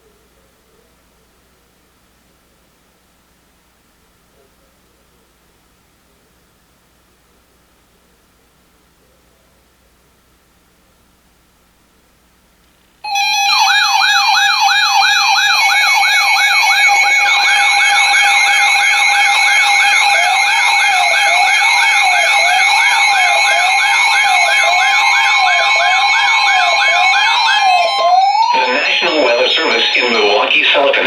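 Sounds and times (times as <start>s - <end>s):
wavering siren wail: 13.1s - 30.5s
high-pitched warbling tones: 13.1s - 30.9s
electronic siren yelp: 13.1s - 31.0s.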